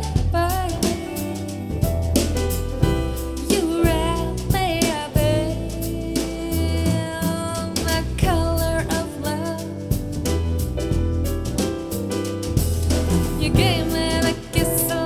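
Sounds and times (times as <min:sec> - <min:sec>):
bass line: 0:00.0 - 0:15.0
steady drum beat: 0:00.0 - 0:15.0
person singing: 0:03.4 - 0:09.7, 0:13.4 - 0:15.0.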